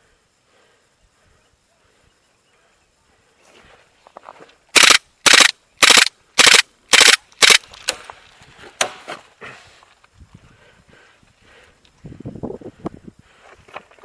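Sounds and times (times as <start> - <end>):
airsoft gun shots: 4.8 - 7.6.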